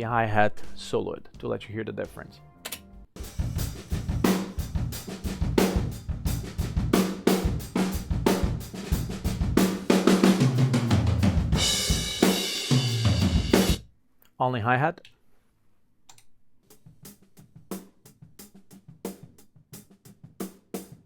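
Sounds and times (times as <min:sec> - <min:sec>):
drum kit groove: 0:00.0 - 0:13.8, 0:16.7 - 0:21.0
drum fill: 0:00.4 - 0:13.8.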